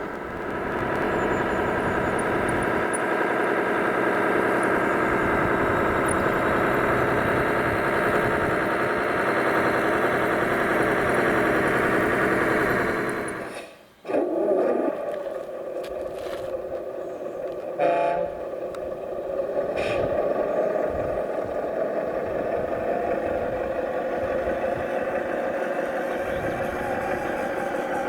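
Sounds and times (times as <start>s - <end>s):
model vehicle motor whine: 0.0s - 28.0s.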